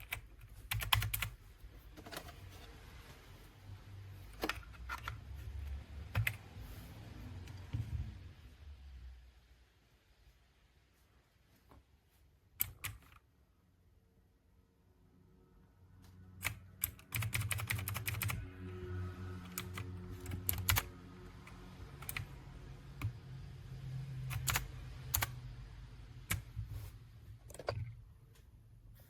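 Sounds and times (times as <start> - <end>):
mechanical keyboard typing: 0.0 - 1.4, 4.3 - 6.5, 12.6 - 13.3, 16.4 - 18.7, 19.4 - 23.2, 24.2 - 25.4, 26.2 - 26.6.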